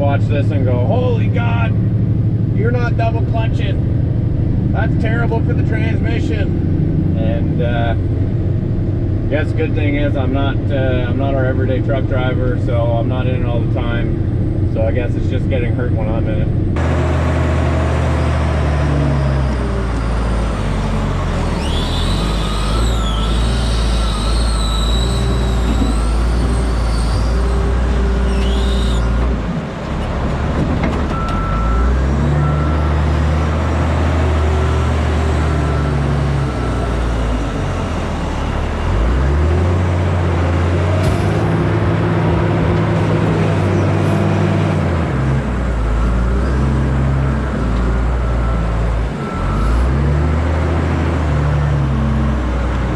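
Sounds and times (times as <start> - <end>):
diesel truck engine under load: 0.0 - 52.9
high wavering squeal: 18.1 - 29.2.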